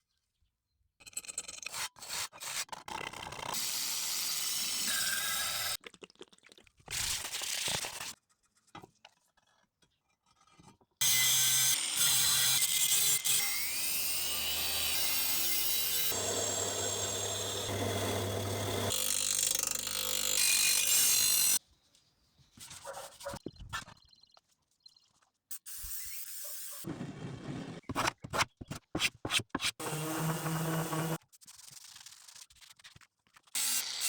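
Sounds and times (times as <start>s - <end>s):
power tool running: 14.2s - 21.6s, 29.8s - 31.2s.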